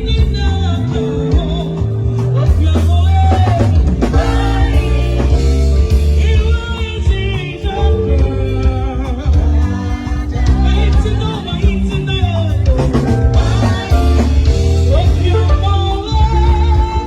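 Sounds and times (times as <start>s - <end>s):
bass-heavy instrumental accompaniment: 0.0s - 17.0s
person singing gospel song: 0.0s - 17.0s.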